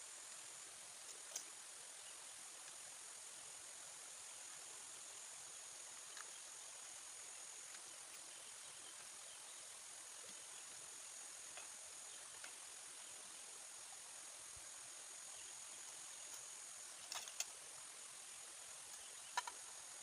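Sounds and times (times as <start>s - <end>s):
insect chorus: 0.0s - 20.0s
faint soft clicks: 1.0s - 1.6s, 6.0s - 6.4s, 12.3s - 12.6s.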